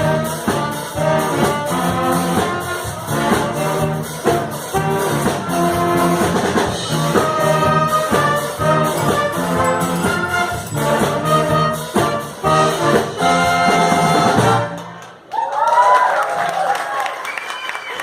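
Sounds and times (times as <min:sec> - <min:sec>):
brass band playing punchy chords: 0:00.0 - 0:15.1.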